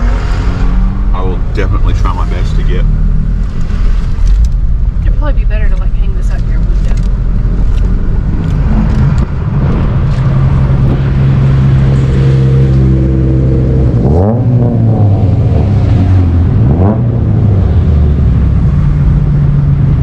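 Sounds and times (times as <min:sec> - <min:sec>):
car engines running: 0:00.0 - 0:20.0
engine revs: 0:06.1 - 0:20.0.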